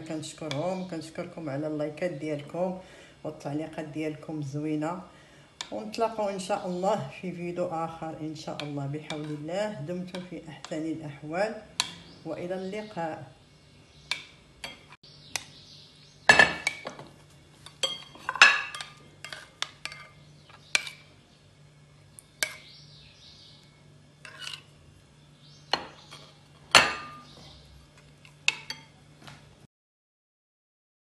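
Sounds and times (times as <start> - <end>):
bowls and spoon clinking: 17.6 - 21.1, 25.7 - 27.3, 28.2 - 29.0.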